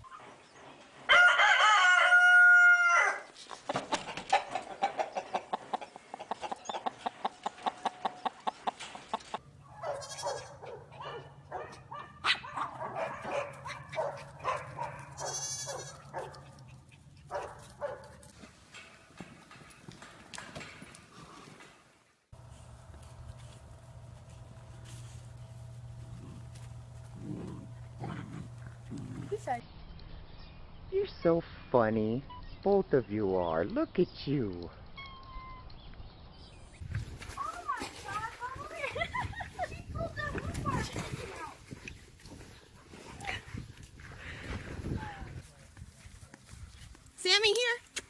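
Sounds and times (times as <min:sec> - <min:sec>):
rooster crowing: 0:01.1 - 0:03.3
low hum: 0:22.4 - 0:31.7.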